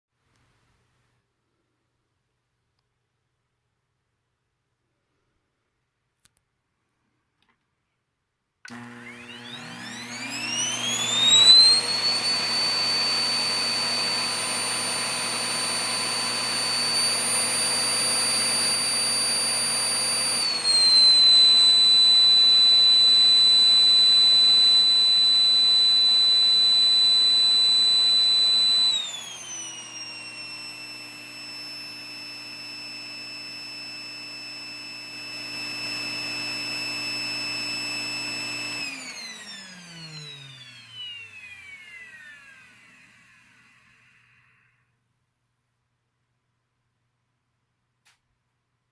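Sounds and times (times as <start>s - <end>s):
vacuum cleaner motor whining: 8.6s - 44.8s.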